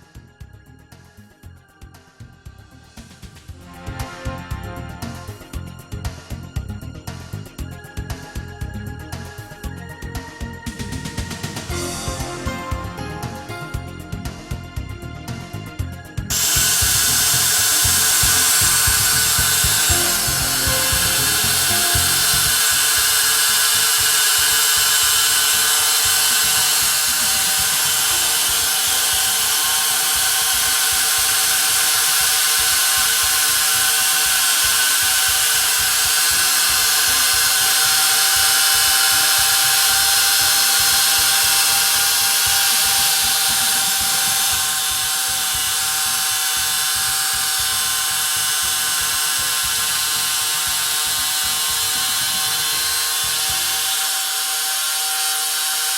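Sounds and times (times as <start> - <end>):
reciprocating saw cutting steel: 16.3 - 55.9.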